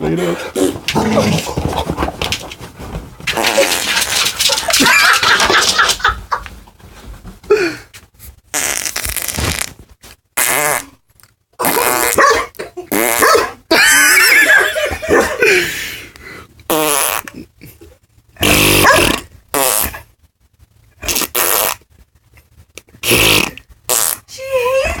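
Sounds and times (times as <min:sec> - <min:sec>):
person making fart noises: 0:03.3 - 0:06.0, 0:08.5 - 0:09.8, 0:10.4 - 0:11.0, 0:11.6 - 0:12.2, 0:12.8 - 0:14.2, 0:16.7 - 0:17.6, 0:18.4 - 0:20.1, 0:21.0 - 0:21.9, 0:23.0 - 0:24.3
dog barking: 0:12.2 - 0:12.5, 0:13.2 - 0:13.6, 0:18.8 - 0:19.1.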